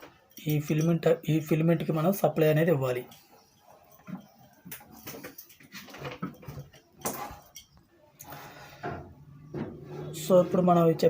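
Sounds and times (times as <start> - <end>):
clicks and clinks of metal parts: 0.0 - 1.0, 4.0 - 7.8.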